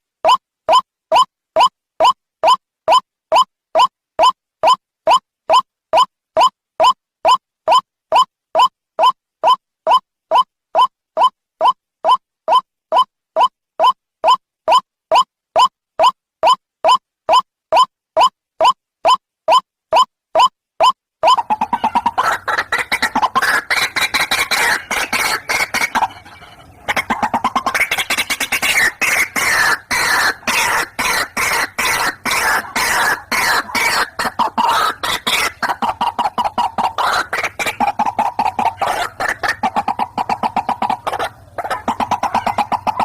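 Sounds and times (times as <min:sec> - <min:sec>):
waterhens croaking calls: 0:21.2 - 0:43.0.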